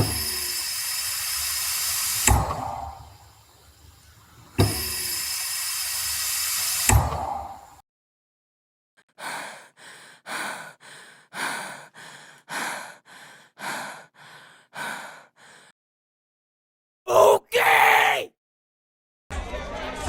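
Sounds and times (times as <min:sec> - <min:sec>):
person breathing heavily: 0:09.1 - 0:15.7.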